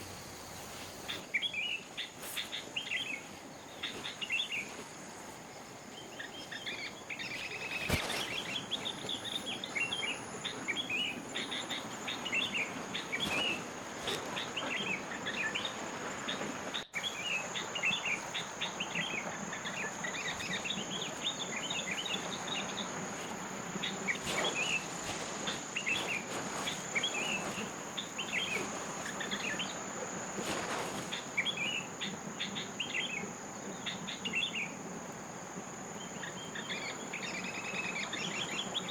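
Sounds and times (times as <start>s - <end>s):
high insect drone: 0.0s - 38.9s
bird chirps and twitters: 6.0s - 29.8s.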